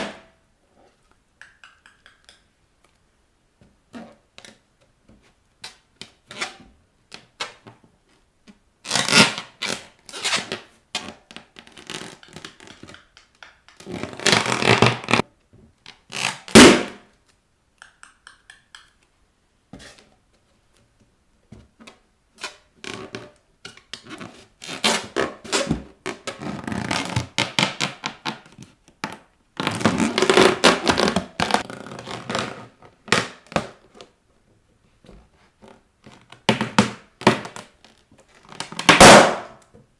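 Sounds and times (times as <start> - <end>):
balloon pop: 16.5 - 17.0, 38.9 - 39.6.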